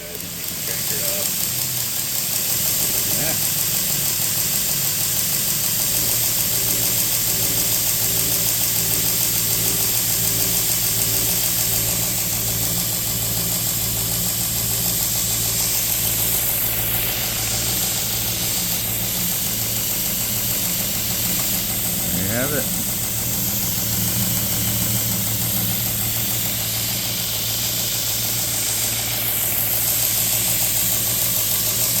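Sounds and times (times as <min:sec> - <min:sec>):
belt grinder motor hum: 0:00.0 - 0:32.0
belt hiss: 0:00.0 - 0:32.0.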